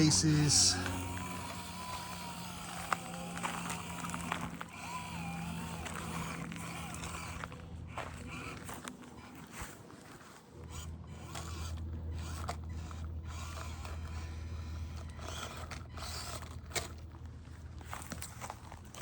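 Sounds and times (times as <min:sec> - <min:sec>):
steady low hum: 0:00.0 - 0:09.4
small electric motor and gears: 0:00.0 - 0:19.0.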